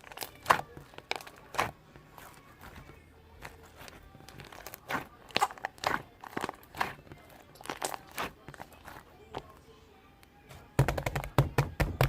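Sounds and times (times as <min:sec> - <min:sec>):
slime popping and crackling: 0:00.0 - 0:09.0.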